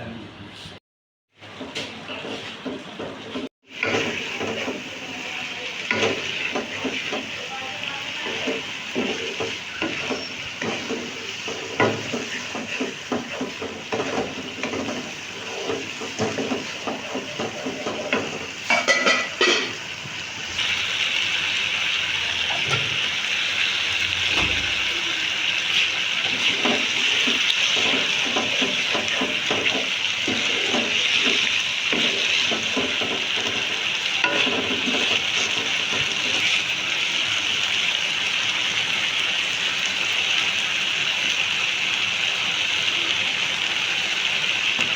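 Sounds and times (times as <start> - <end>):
spatula stirring and scraping: 1.4 - 19.8, 25.6 - 36.8
food sizzling in a pan: 1.4 - 44.9.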